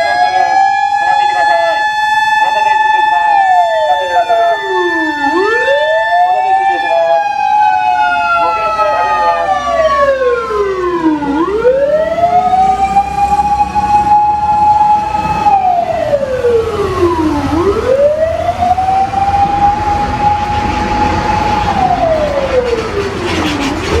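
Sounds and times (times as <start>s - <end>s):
fire engine siren wailing: 0.0s - 24.0s
engine rumble: 7.0s - 24.0s.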